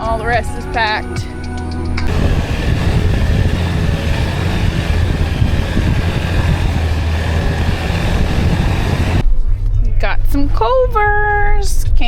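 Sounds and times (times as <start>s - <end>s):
car road and engine rumble: 2.1s - 9.2s.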